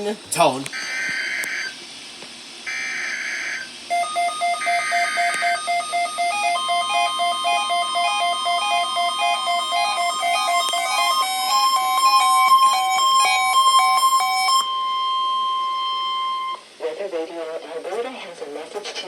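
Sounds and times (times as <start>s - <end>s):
alternating two-tone data bursts: 2.7s - 16.6s
electronic beeps at several pitches: 3.9s - 16.6s
steady alert tone: 3.9s - 16.6s.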